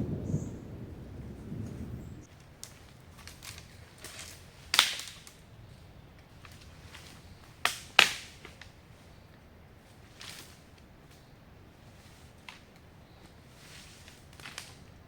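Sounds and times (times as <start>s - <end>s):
sharp cracks: 0.0s - 5.6s, 6.2s - 8.8s, 12.4s - 15.0s.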